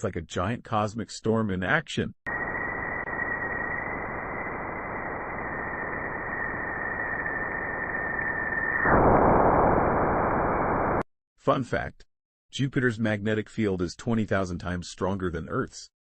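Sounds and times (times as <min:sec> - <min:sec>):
high whistling tone: 0:02.3 - 0:09.2
static hiss: 0:02.3 - 0:11.0.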